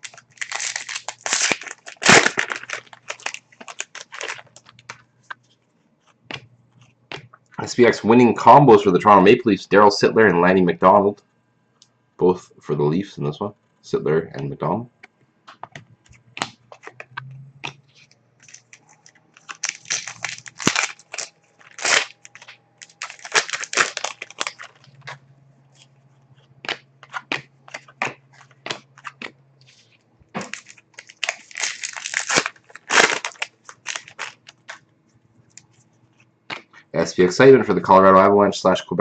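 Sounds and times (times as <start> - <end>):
card wrappers crinkling: 0.0 - 6.4, 15.6 - 34.8.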